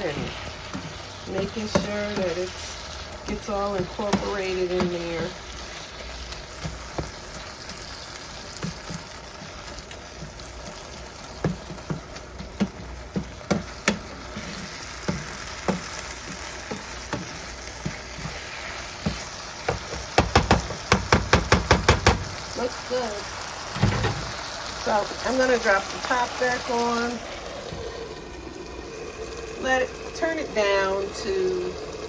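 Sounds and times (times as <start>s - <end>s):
meat sizzling in a frying pan: 0.0s - 32.0s
utensil scraping a pan: 11.7s - 19.9s.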